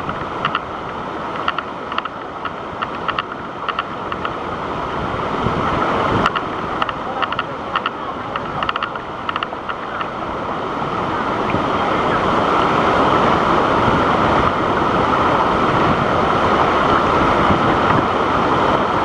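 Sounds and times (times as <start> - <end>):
waterfall roaring: 0.0 - 19.0
light clicks: 6.2 - 10.1.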